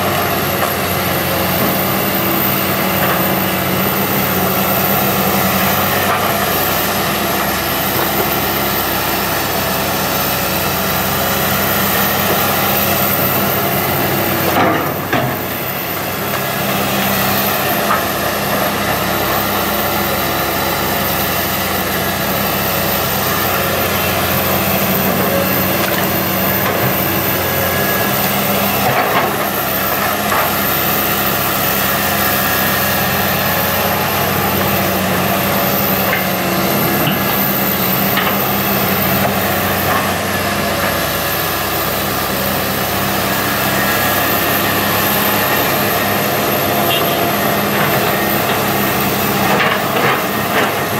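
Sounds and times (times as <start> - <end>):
excavator diesel engine running: 0.0 - 50.9.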